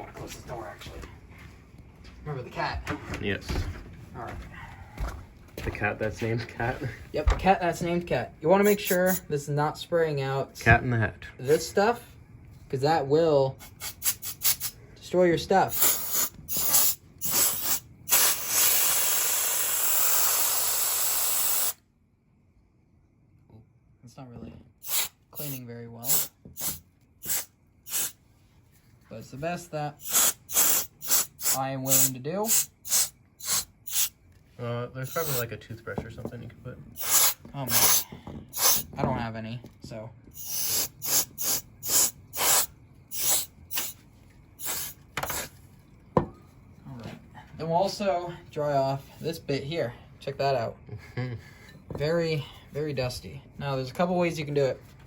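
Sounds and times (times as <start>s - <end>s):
compressed air duster hissing: 8.6s - 9.3s, 13.6s - 14.8s, 15.7s - 21.8s, 24.8s - 28.2s, 30.0s - 34.2s, 35.1s - 35.5s, 37.0s - 38.9s, 40.4s - 44.0s, 44.6s - 45.6s.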